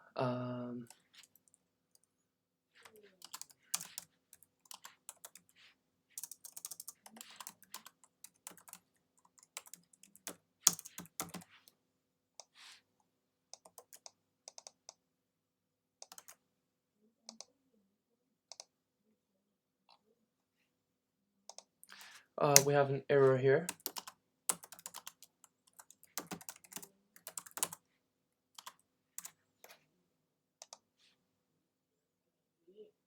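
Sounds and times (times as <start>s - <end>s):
typing on keyboard: 2.9s - 5.6s, 6.2s - 11.5s, 13.6s - 15.0s, 16.0s - 16.4s, 23.7s - 27.8s, 28.6s - 29.3s.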